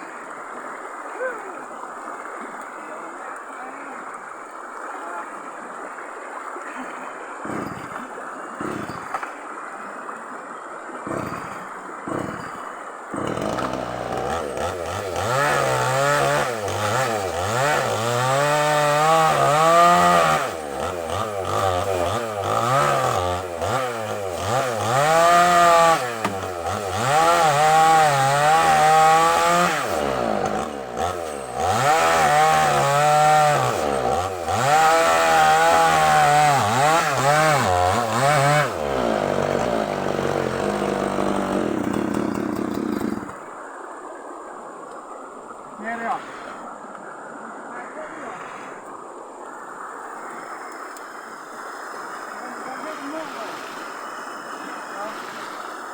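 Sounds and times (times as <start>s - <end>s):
chainsaw cutting wood: 7.4s - 9.4s, 11.1s - 43.4s
dull knocks: 7.5s - 8.0s, 11.1s - 12.6s.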